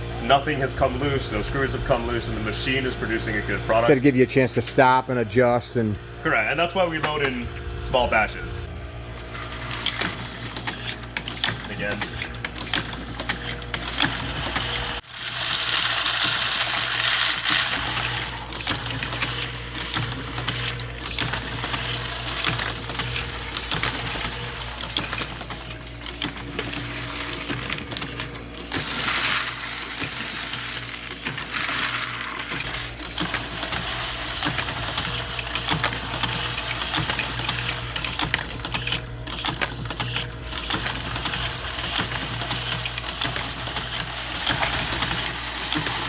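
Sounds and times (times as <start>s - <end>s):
machine hum: 0.0s - 46.0s
metal cartridges clinking: 9.2s - 46.0s.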